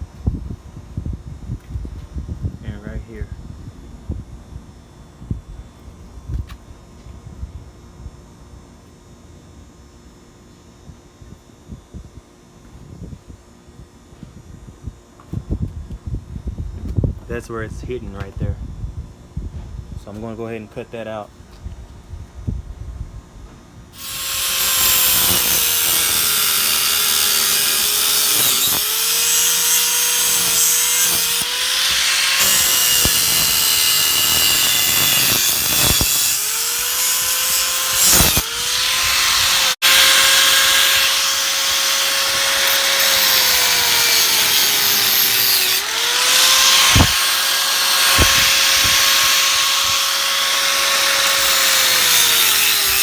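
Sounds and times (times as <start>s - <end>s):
power tool cutting metal: 24.0s - 53.0s.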